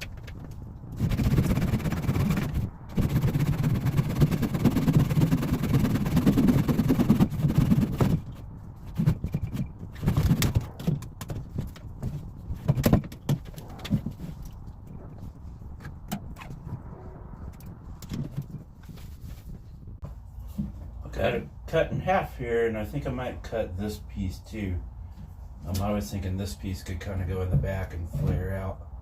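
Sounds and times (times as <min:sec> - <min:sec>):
knocks and thuds: 0:00.0 - 0:14.4.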